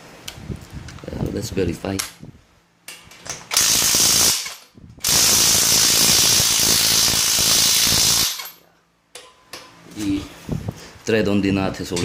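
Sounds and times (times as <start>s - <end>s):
impact wrench rattling: 3.1s - 8.6s.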